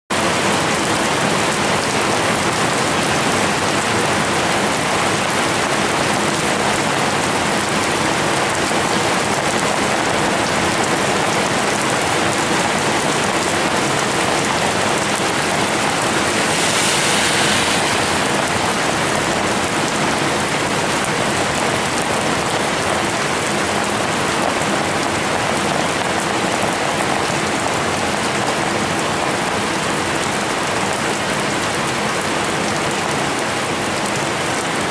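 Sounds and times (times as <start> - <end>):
steady rain falling: 0.1 - 34.9
brief higher hiss: 14.4 - 20.7.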